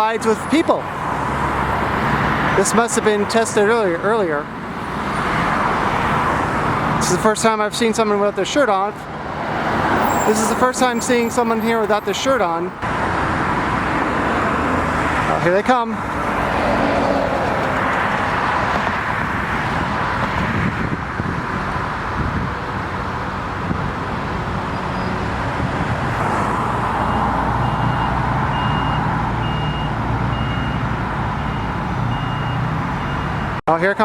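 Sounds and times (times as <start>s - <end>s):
road and construction vehicle noise: 0.0s - 34.0s
reversing beeper: 10.0s - 12.8s, 27.0s - 33.6s.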